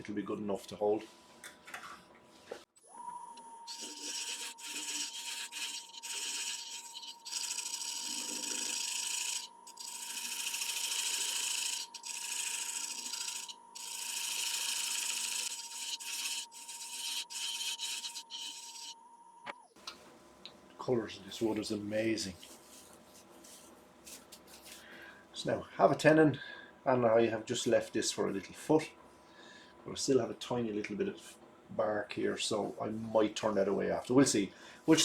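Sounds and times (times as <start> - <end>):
lathe whine: 2.9 - 19.0
gouge scraping wood: 3.7 - 19.0.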